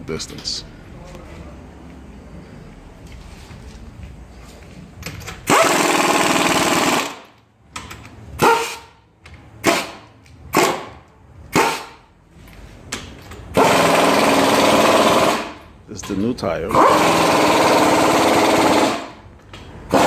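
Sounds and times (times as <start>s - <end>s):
pneumatic impact wrench rattling: 5.0s - 8.9s, 9.6s - 12.0s, 13.1s - 15.6s, 16.7s - 20.0s.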